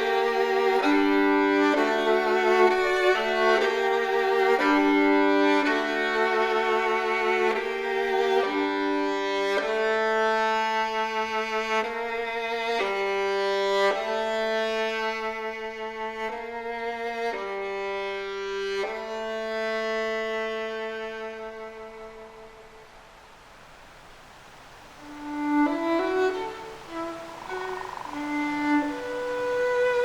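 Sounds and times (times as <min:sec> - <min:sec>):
solo violin bowed notes: 0:00.0 - 0:23.2, 0:24.8 - 0:30.0.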